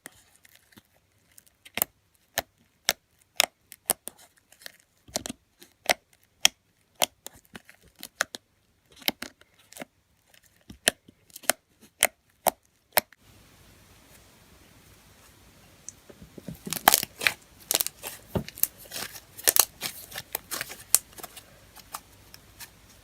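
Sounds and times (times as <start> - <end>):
faint hiss: 13.2 - 23.0.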